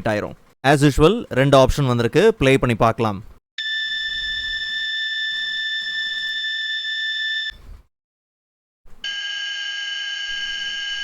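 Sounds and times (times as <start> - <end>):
electronic buzzer tone: 3.6 - 7.6, 9.0 - 11.0.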